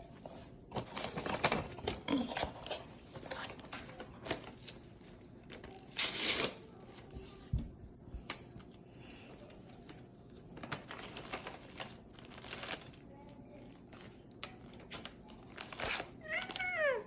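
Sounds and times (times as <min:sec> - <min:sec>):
snack packaging rustling: 0:10.4 - 0:17.0.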